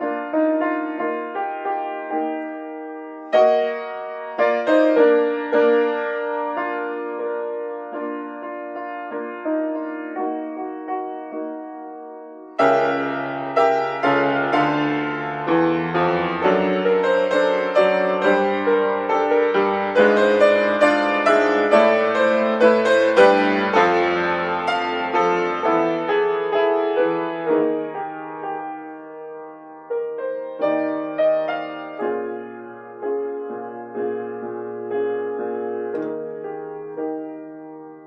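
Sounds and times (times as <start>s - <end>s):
solo piano playing: 0.0s - 38.0s.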